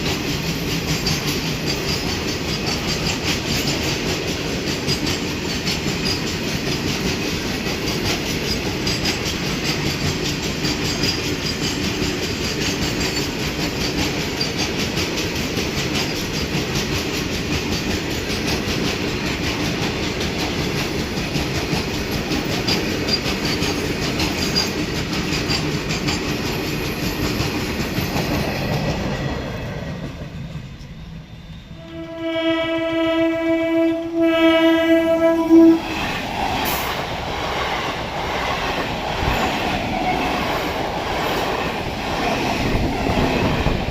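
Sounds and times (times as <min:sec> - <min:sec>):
train wheels clattering: 0:00.0 - 0:31.2, 0:34.9 - 0:43.9
train horn blast: 0:31.8 - 0:36.0.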